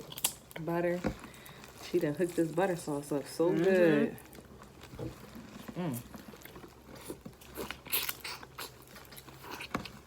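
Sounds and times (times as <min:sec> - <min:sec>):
crab shell cracking: 0:00.0 - 0:00.6
chewing and crunching: 0:00.0 - 0:10.0.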